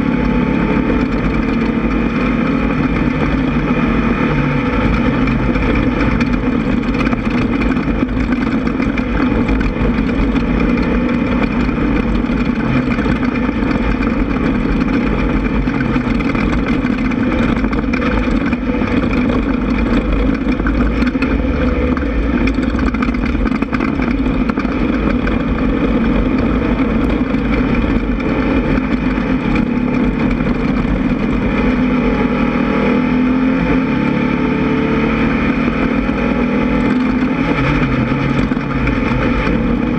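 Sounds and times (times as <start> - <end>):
buggy engine at high revs: 0.0 - 39.9.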